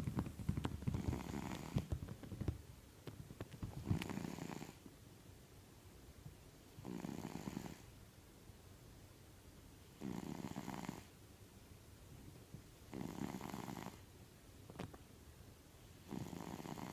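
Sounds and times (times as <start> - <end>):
cat snoring: 0.9 - 1.9, 3.8 - 4.8, 6.8 - 7.9, 10.0 - 11.1, 12.9 - 14.0, 16.0 - 16.9.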